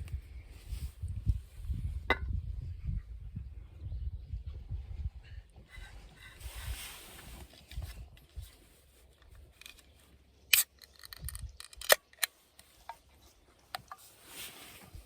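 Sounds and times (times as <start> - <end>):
sharp clicks and snaps: 10.5 - 12.7.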